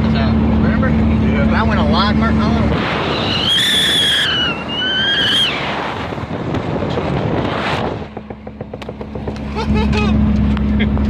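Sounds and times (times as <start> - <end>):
wind and road noise: 0.0 - 11.0
high-pitched squeal: 3.0 - 5.8.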